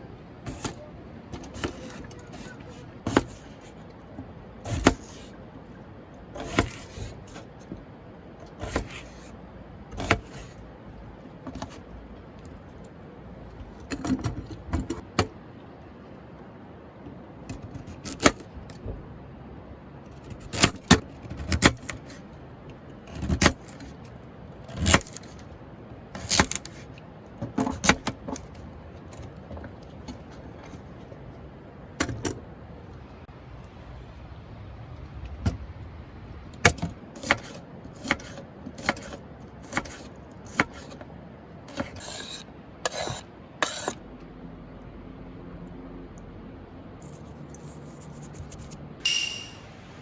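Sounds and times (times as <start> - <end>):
faint steady background noise: 0.0 - 50.0.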